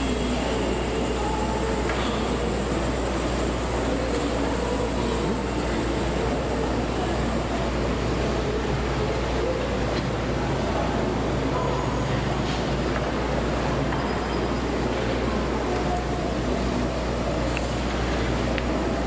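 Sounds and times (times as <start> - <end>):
faint murmur of voices: 0.0 - 19.0.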